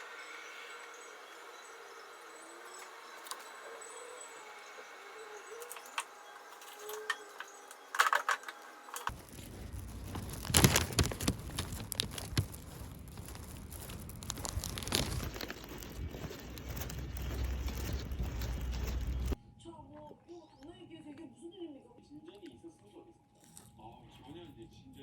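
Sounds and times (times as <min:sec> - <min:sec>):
low background hum: 0:00.0 - 0:25.0
light clicks and crinkling: 0:05.6 - 0:19.4.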